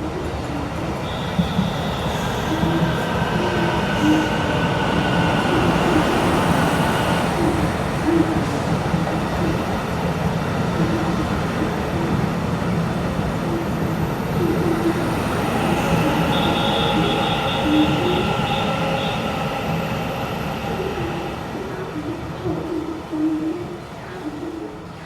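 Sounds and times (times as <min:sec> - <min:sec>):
train wheels rumbling on rail: 0:00.0 - 0:25.0
whining tones: 0:14.6 - 0:21.7.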